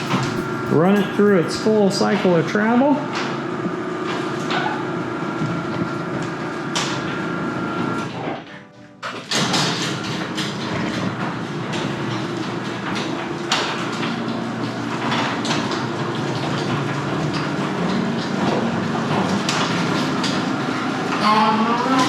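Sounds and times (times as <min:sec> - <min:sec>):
garage door rattling: 0:00.0 - 0:01.8, 0:09.1 - 0:21.2
garage door opener motor hum: 0:00.0 - 0:22.0.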